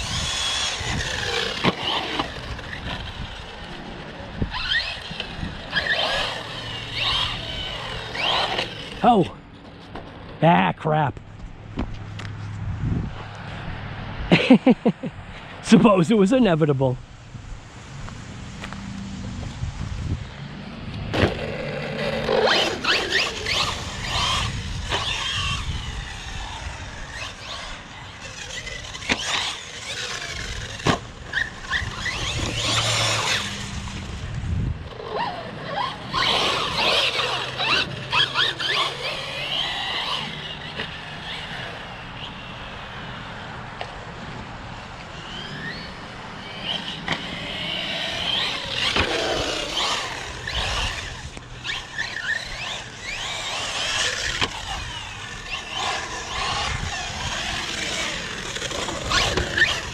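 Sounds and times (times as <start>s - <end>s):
electric motor whining: 0.0s - 9.7s, 18.0s - 59.9s
tire squeal: 4.4s - 9.2s, 21.1s - 33.8s, 35.0s - 43.8s, 45.1s - 59.9s.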